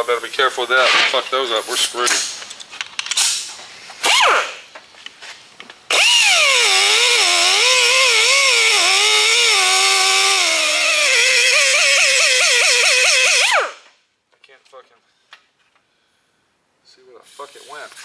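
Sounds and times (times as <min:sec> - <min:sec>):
pneumatic air chisel on rivets: 0:03.0 - 0:04.7, 0:05.9 - 0:13.9, 0:17.2 - 0:18.0.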